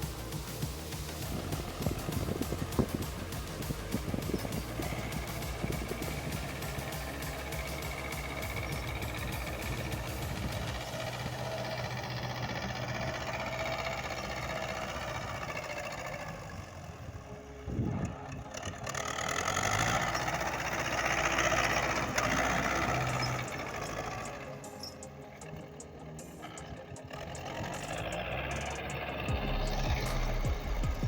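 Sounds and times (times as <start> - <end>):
engine running with pulsing beat: 0.0 - 31.0
rushing noise: 27.0 - 31.0.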